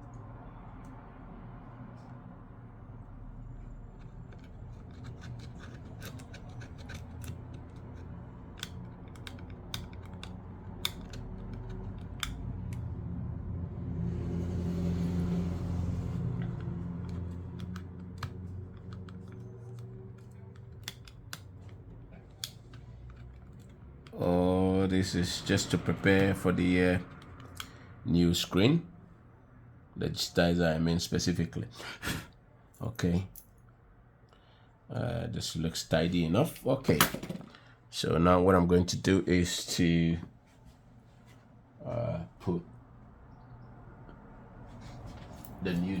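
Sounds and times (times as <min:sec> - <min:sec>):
hand tools scraping and clicking: 0:03.9 - 0:12.9, 0:15.2 - 0:24.2.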